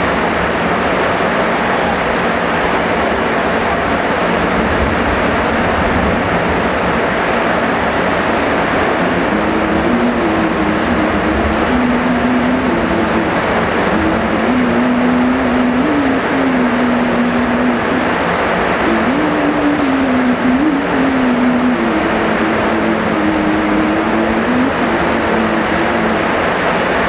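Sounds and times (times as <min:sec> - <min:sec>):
heavy rain: 0:00.0 - 0:27.0
low droning hum: 0:00.0 - 0:27.0.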